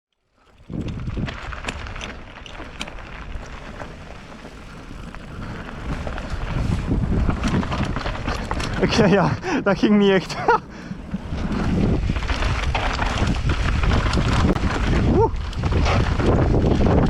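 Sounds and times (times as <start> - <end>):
bike rattling clicks: 0.1 - 17.0
bike tyre noise: 0.1 - 17.0
wind rumbling on microphone: 0.3 - 17.0.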